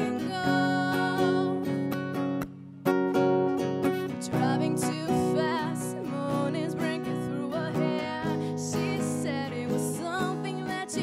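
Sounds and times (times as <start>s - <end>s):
person singing: 0.0s - 1.9s, 4.1s - 11.0s
acoustic guitar strumming: 0.0s - 11.0s.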